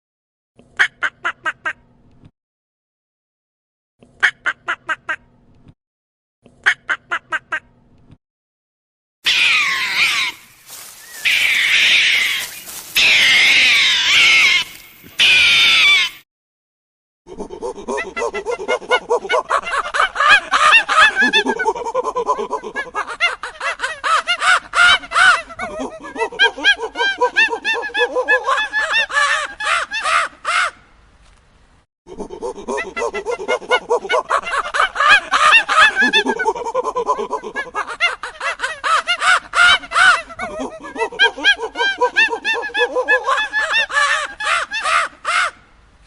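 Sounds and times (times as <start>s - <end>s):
animal crying high and wavering: 9.3s - 16.2s
many birds calling rapidly: 9.3s - 16.2s.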